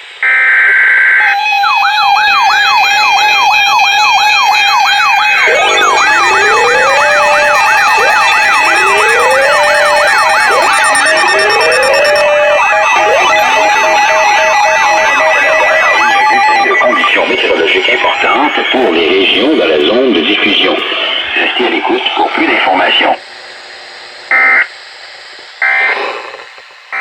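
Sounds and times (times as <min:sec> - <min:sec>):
electronic siren fast sweep: 0:01.1 - 0:21.7
rising siren whoop: 0:01.2 - 0:19.0
high electronic beep: 0:05.2 - 0:20.8.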